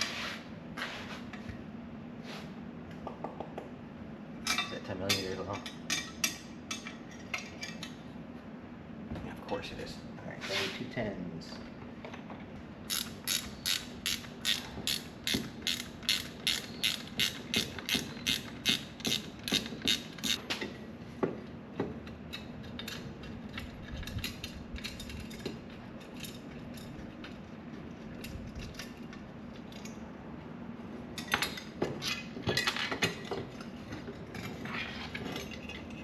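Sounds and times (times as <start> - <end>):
ratchet wrench clicking: 12.9 - 20.4.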